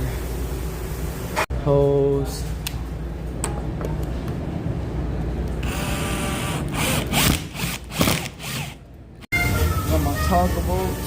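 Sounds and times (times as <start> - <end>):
power drill boring into wall: 5.6 - 8.8.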